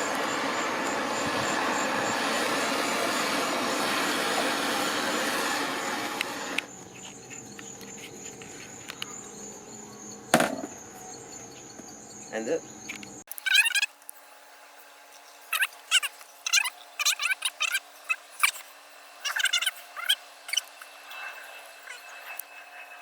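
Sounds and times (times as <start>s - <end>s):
crickets chirping: 0.0s - 5.6s, 6.6s - 23.0s
torch flame hissing: 0.0s - 8.0s.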